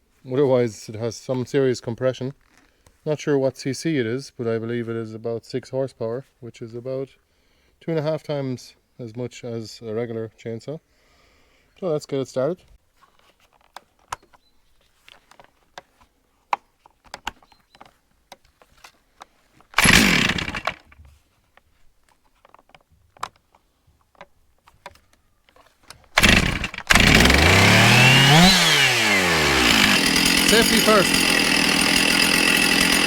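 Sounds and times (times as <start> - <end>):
chainsaw engine running: 19.8 - 20.9, 26.2 - 33.0
chainsaw pull cord clicks: 19.8 - 20.9, 25.9 - 33.0.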